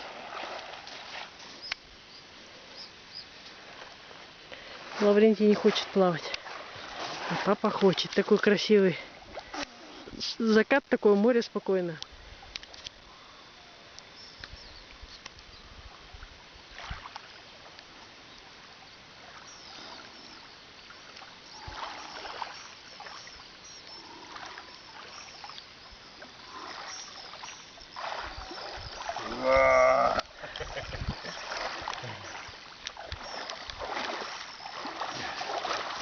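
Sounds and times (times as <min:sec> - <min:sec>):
person swimming splashes: 0:00.0 - 0:01.4, 0:04.6 - 0:09.8, 0:16.7 - 0:17.3, 0:21.0 - 0:23.4, 0:24.1 - 0:25.6, 0:26.2 - 0:36.0
sea water lapping: 0:00.0 - 0:10.3, 0:15.9 - 0:36.0.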